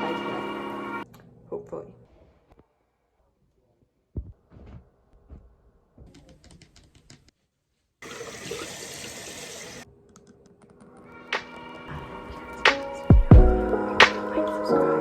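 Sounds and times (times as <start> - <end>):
music: 0.0 - 1.1, 10.3 - 15.0
running water: 8.0 - 9.8.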